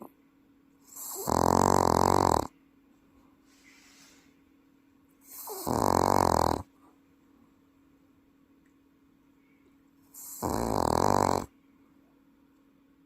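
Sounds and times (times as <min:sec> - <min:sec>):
dog snoring: 0:00.8 - 0:02.5, 0:05.2 - 0:06.7, 0:10.1 - 0:11.5
faint breath: 0:03.2 - 0:04.5.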